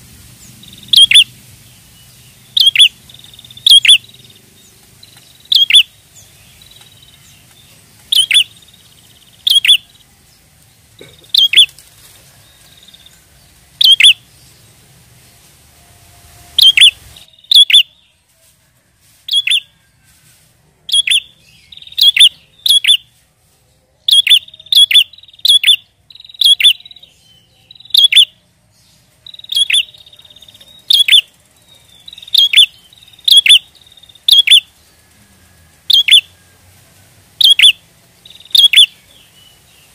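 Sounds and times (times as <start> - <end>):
bird calling sharp notes: 0.5 - 1.3, 2.5 - 4.4, 5.0 - 7.2, 8.0 - 10.0, 11.0 - 11.8, 13.8 - 14.2, 16.5 - 18.0, 19.3 - 19.7, 20.9 - 23.1, 24.1 - 27.1, 27.7 - 28.4, 29.2 - 34.7, 35.9 - 36.4, 37.4 - 39.1.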